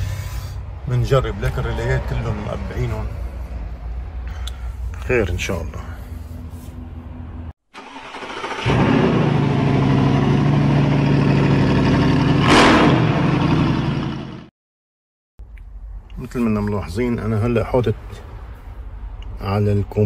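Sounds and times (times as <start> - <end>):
diesel engine running: 0.0 - 14.5
diesel engine cranking: 7.7 - 14.4.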